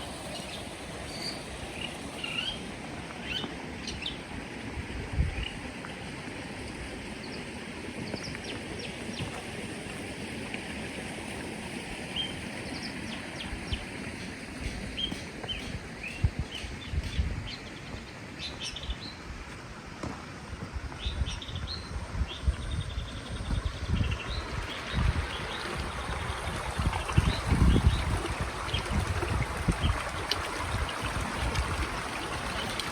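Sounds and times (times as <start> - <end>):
running water: 0.0 - 32.9
small birds chirping: 15.0 - 19.2.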